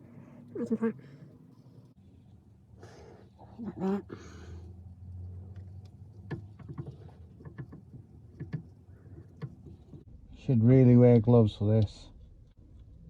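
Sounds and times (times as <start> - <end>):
tools clicking and knocking: 6.2 - 10.0.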